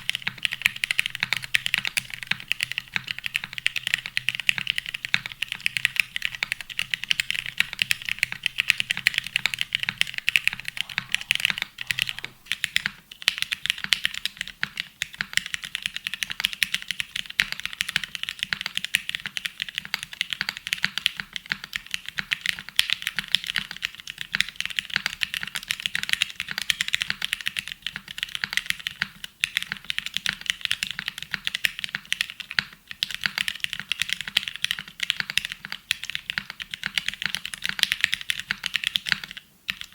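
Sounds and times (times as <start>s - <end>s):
dense rapid clicking: 0.0s - 12.9s.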